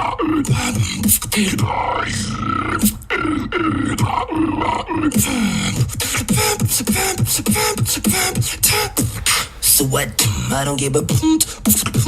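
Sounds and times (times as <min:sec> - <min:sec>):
beatboxing: 0:00.0 - 0:12.0.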